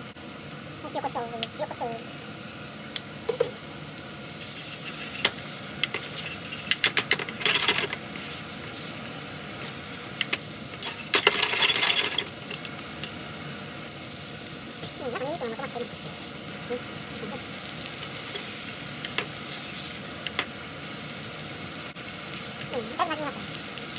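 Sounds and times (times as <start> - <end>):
food sizzling in a frying pan: 0.0 - 23.9
utensil clicking against pan: 4.9 - 8.0, 19.0 - 19.4.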